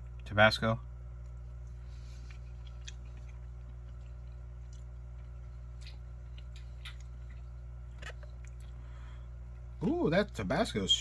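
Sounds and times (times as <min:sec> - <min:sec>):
steady low hum: 0:00.0 - 0:11.0
faint chewing: 0:01.2 - 0:09.8.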